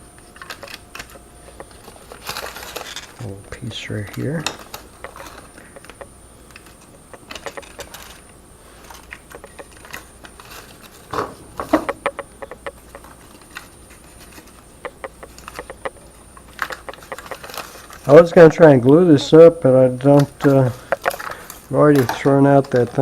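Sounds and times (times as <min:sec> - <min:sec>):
foil tape crinkling: 0:00.2 - 0:18.7, 0:19.9 - 0:23.0.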